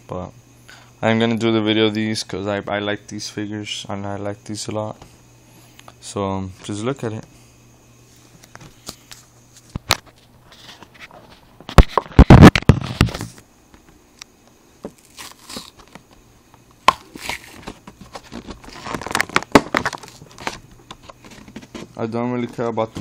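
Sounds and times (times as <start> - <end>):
blister package crinkling: 17.0 - 20.6.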